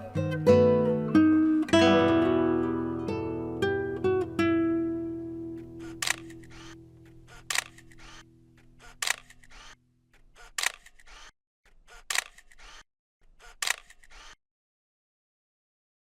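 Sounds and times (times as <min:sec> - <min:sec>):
guitar chord: 0:00.0 - 0:05.8
camera shutter clicks: 0:05.8 - 0:09.8, 0:10.4 - 0:11.3, 0:11.9 - 0:12.8, 0:13.4 - 0:14.4.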